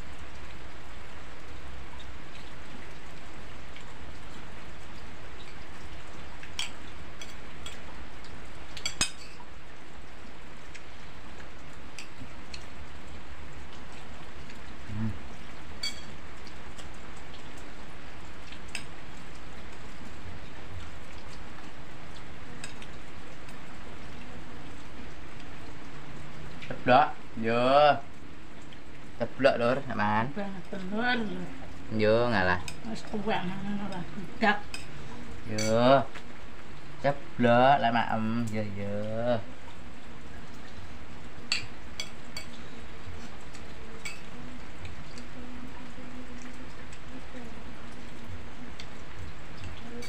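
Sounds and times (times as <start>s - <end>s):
steady rain hiss: 0.0s - 50.0s
cutlery clinking on dishes: 15.8s - 16.2s, 35.6s - 35.8s.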